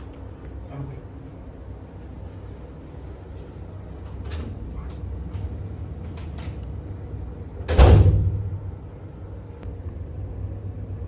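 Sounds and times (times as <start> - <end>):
steady low hum: 0.0 - 11.0
door shutting: 7.7 - 8.5.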